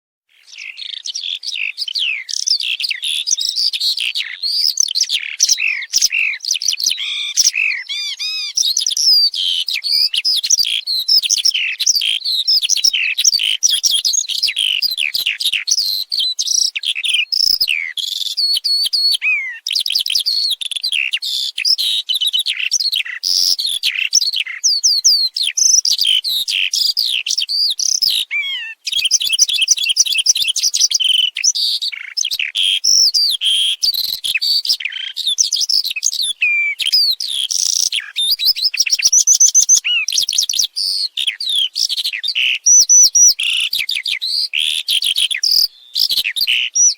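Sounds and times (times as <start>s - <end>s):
skylark singing: 0.3s - 46.9s.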